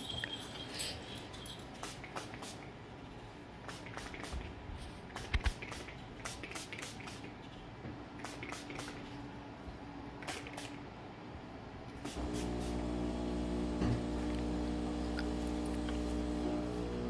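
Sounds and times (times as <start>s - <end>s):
spray bottle spritzes: 1.8s - 2.7s, 3.6s - 4.5s, 5.1s - 7.4s, 8.2s - 9.1s, 10.2s - 10.8s, 12.0s - 12.9s
low steady hum: 11.2s - 17.0s.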